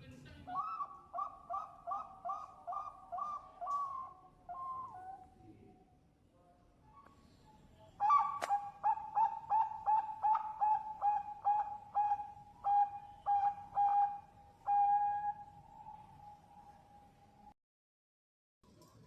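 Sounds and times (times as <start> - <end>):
dove cooing: 0.5 - 5.2, 8.0 - 16.4.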